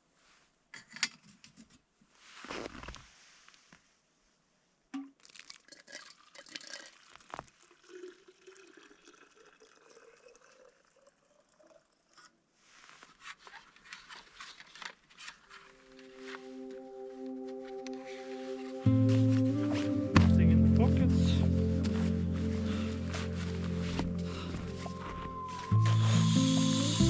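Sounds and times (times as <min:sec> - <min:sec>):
soft music: 0:15.6 - 0:27.0.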